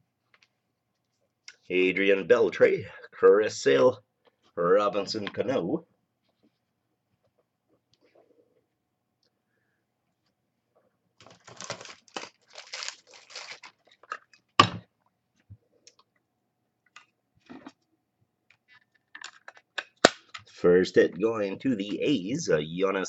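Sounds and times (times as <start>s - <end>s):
packaging rustling and crinkling: 11.2s - 14.5s.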